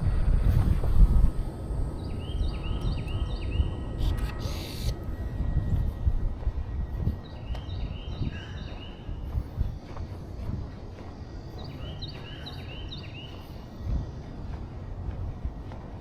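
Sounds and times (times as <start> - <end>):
low rumble: 0.0 - 16.0
songbird chirping: 1.6 - 16.0.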